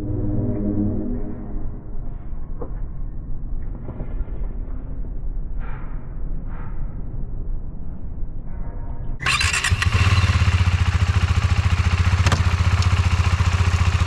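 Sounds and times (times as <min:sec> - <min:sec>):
motorcycle engine starting and running: 0:09.2 - 0:14.0.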